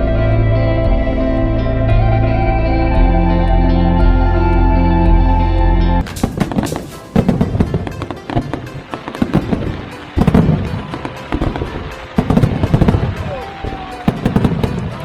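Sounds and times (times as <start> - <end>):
firework crackling: 6.0 - 15.0
firework shells booming: 6.0 - 15.0.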